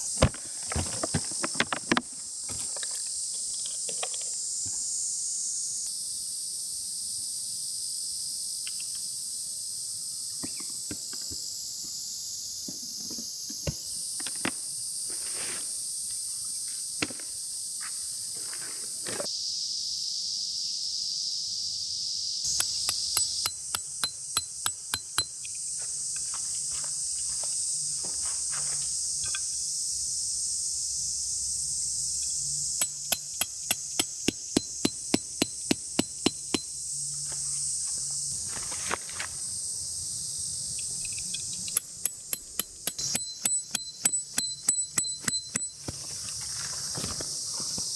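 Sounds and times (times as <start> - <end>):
light knocks and rustles: 0.0 - 4.8
insects shrilling: 0.0 - 47.9
hammer strikes: 22.5 - 25.4, 32.8 - 36.7, 41.8 - 46.1.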